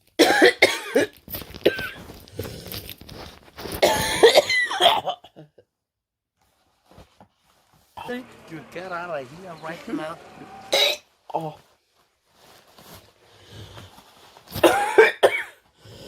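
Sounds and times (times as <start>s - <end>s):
person coughing: 0.2s - 2.0s, 3.8s - 5.5s, 14.6s - 15.6s.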